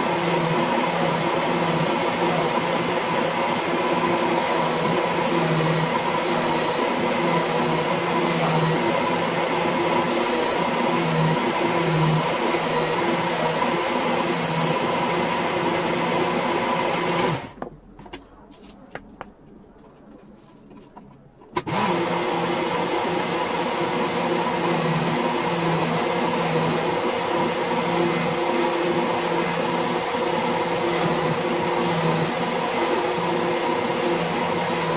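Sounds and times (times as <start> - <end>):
belt sharpener grinding blade: 14.2 - 14.8, 27.8 - 34.9.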